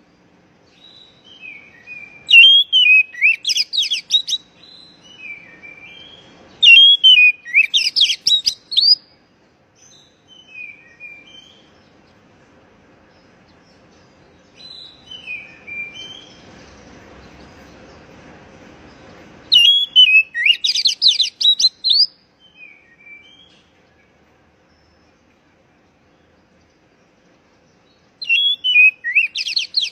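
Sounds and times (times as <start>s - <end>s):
bird chattering: 2.3s - 4.5s, 6.6s - 9.1s, 19.1s - 22.1s, 28.2s - 29.9s.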